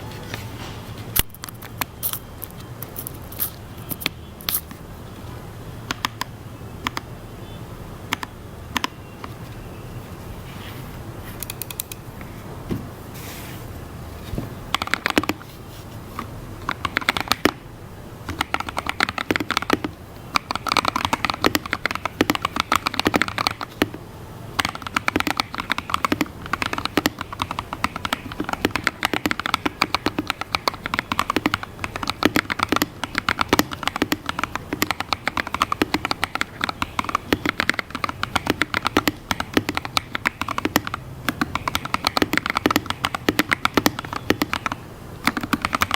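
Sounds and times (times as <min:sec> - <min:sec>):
typing on mechanical keyboard: 0:05.9 - 0:07.1, 0:08.1 - 0:09.5, 0:11.4 - 0:12.0, 0:14.7 - 0:15.5, 0:16.6 - 0:17.6, 0:18.2 - 0:45.9.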